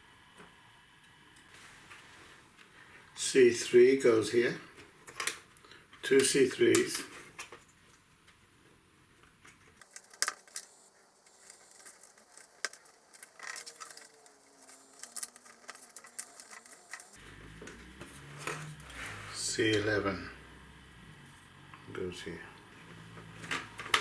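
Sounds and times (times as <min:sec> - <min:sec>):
wooden pieces clicking: 0:09.8 - 0:17.2.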